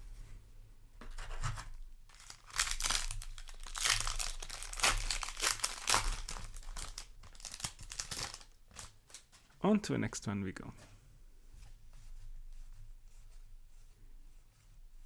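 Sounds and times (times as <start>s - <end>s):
plastic foil wrapper crinkling: 2.1s - 9.4s.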